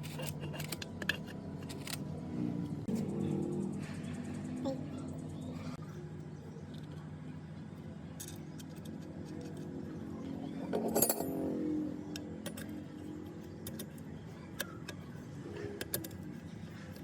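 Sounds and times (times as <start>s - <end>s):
metal parts clinking: 0.0s - 2.0s, 10.7s - 11.4s
steady low hum: 0.0s - 17.0s.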